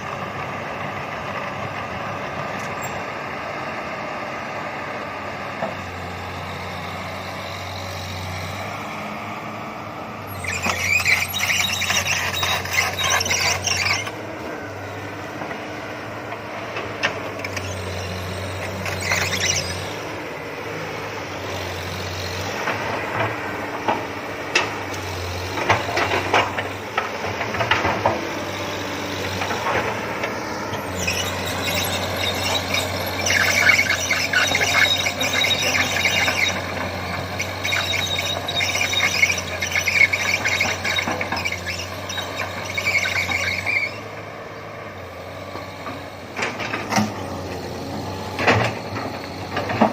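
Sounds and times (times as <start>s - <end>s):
excavator diesel engine running: 0.0s - 49.9s
metal squealing against metal: 10.3s - 14.2s, 17.4s - 20.0s, 30.8s - 44.0s.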